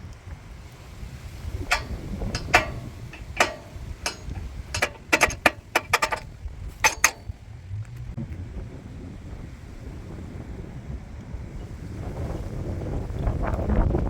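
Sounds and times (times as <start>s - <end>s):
wind rumbling on microphone: 0.0s - 14.0s.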